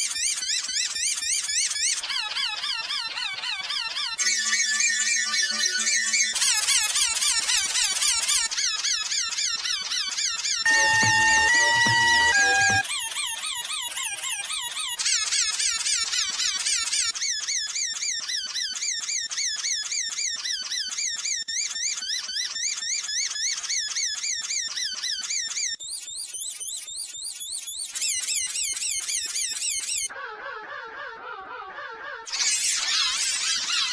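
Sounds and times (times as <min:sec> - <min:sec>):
wavering processed wheezing tones: 0:02.1 - 0:08.4, 0:10.7 - 0:14.9.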